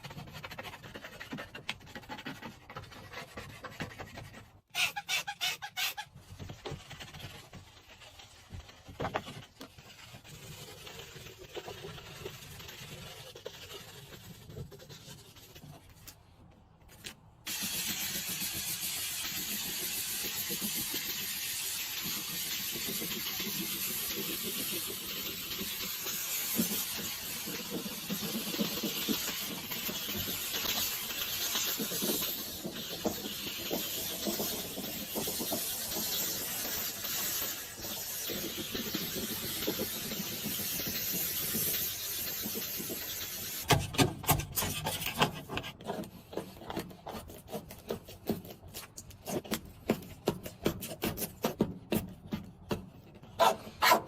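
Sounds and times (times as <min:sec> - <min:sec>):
scattered cleaning noise: 0:17.5 - 0:43.7.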